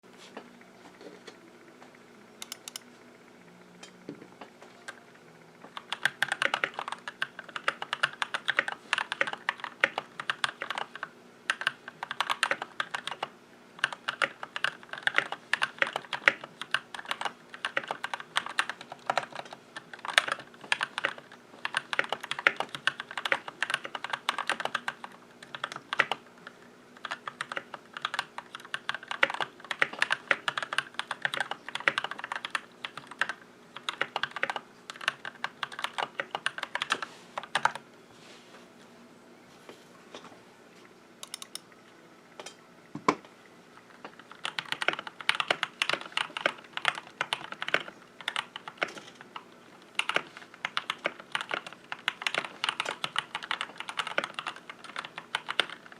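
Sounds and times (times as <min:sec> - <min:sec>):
mechanical keyboard typing: 0:02.4 - 0:02.8, 0:05.7 - 0:37.8, 0:41.2 - 0:41.6, 0:44.1 - 0:55.9.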